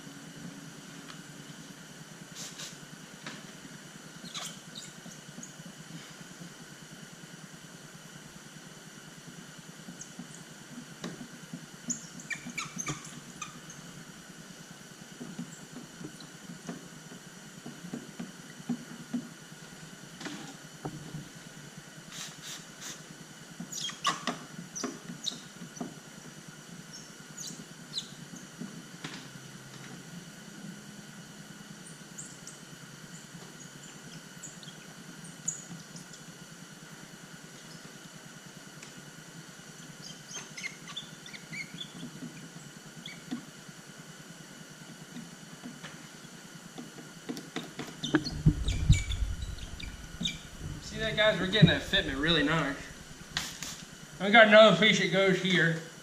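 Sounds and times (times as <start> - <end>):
squeaks and rubbing of film: 11.9 - 13.9, 48.0 - 54.0
faint hum: 48.0 - 56.0.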